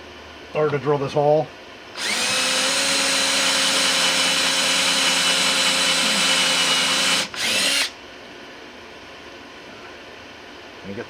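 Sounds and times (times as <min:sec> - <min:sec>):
electric drill drilling: 0:02.0 - 0:07.9.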